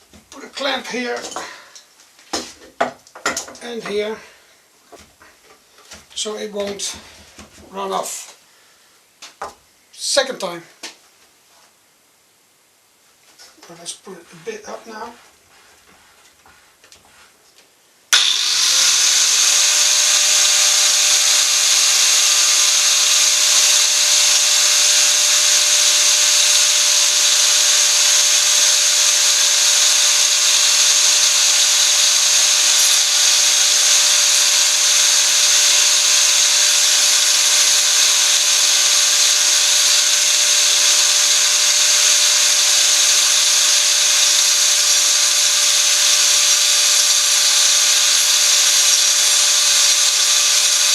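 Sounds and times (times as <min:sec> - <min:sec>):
angle grinder whining: 0:18.1 - 0:50.9.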